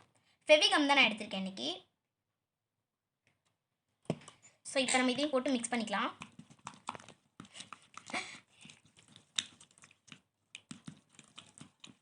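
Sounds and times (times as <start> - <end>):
spoon stirring sticky slime: 4.1 - 12.0.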